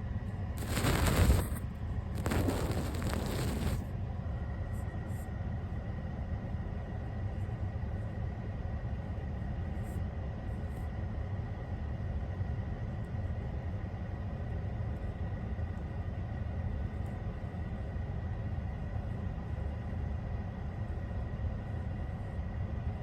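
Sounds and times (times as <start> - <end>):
brush rubbing over microphone: 0.6 - 1.6, 2.2 - 3.8.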